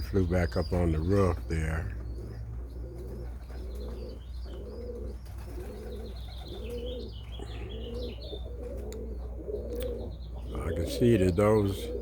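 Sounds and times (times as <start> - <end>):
pigeons cooing: 0.0 - 12.0.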